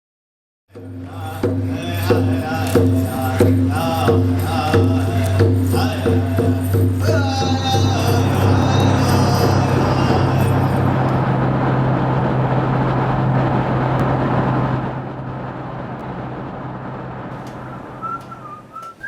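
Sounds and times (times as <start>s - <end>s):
wavering chant-like melody: 0.8s - 11.7s
low drone: 0.8s - 19.0s.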